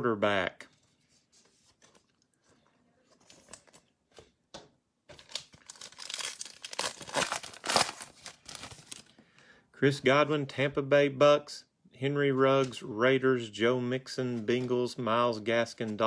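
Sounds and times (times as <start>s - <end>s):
plastic foil wrapper crinkling: 5.1s - 9.1s.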